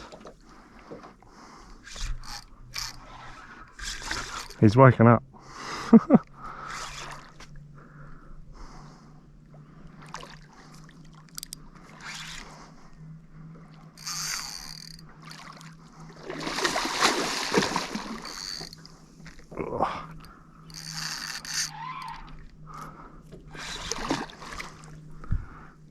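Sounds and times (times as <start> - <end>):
fish thrashing water splashing: 16.2 - 18.9.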